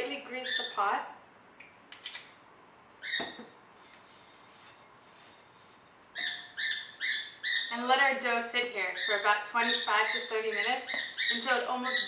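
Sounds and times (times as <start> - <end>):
bird squawking: 3.0 - 3.4, 6.2 - 7.8, 8.9 - 12.0.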